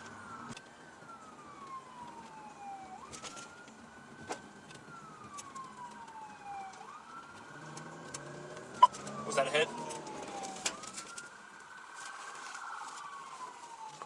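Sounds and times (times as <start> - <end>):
police siren wailing: 0.0 - 14.0.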